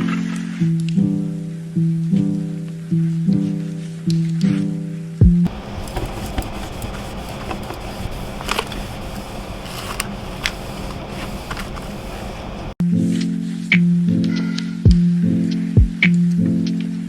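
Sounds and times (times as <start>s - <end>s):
clicks and knocks of handling: 5.8s - 8.9s.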